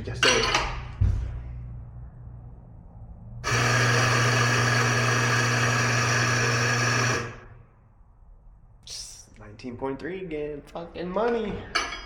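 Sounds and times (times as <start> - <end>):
espresso grinder grinding beans: 3.4 - 7.5.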